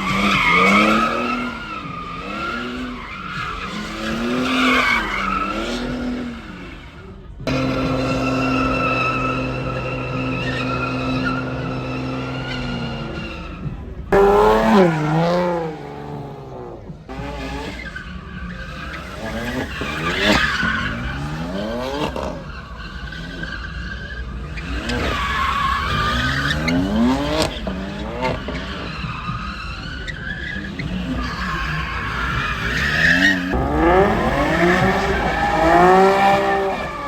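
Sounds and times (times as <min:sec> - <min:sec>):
car engines revving: 0:00.0 - 0:37.0
tyres squealing on asphalt: 0:00.0 - 0:37.0.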